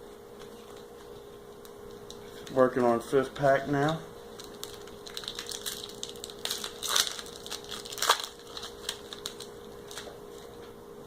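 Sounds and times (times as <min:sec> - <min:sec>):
foil wrapper tearing and crinkling: 0:00.6 - 0:10.2.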